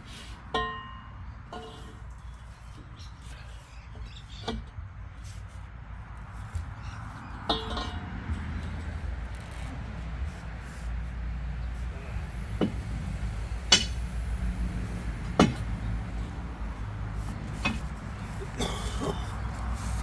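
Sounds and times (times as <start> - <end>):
metal tools knocking on metal: 0.5 - 2.1, 7.5 - 8.2, 13.7 - 14.0.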